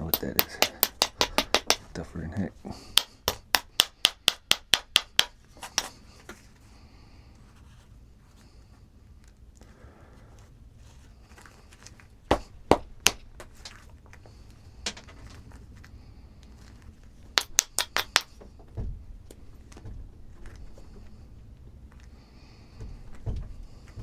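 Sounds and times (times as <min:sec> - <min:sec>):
knapping tool striking stone: 0:00.0 - 0:02.1, 0:02.9 - 0:06.0, 0:12.3 - 0:13.8, 0:17.4 - 0:18.3.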